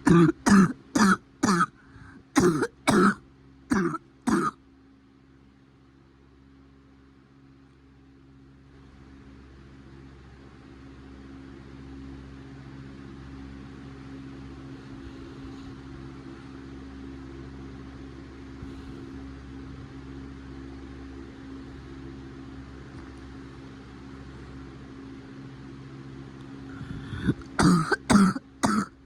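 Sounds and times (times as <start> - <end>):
machine hum: 0.0 - 4.6.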